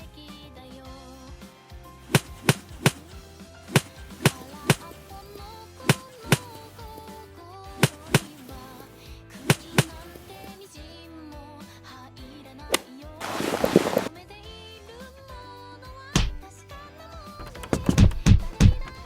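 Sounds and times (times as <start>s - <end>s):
background music with melody: 0.0s - 19.0s
tool knocking on wood: 17.5s - 19.0s.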